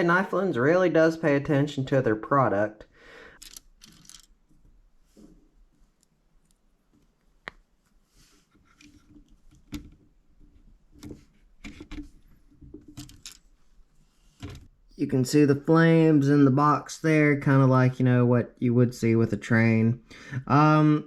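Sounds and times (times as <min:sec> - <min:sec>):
plastic bricks being handled: 0:03.4 - 0:04.7, 0:05.9 - 0:13.6.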